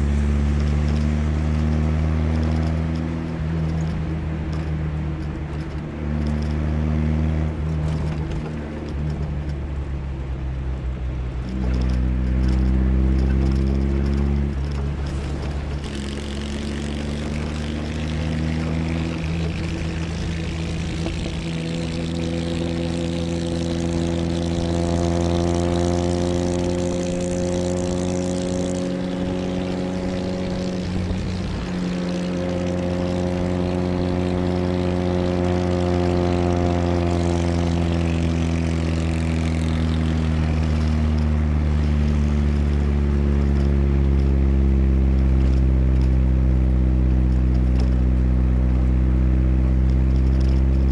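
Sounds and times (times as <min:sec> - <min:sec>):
car engine pulling: 0:00.0 - 0:50.9.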